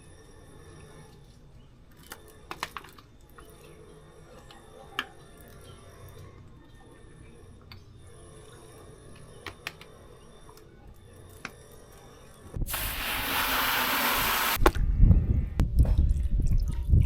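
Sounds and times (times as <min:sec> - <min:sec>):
loud steady hiss: 0:12.7 - 0:14.6.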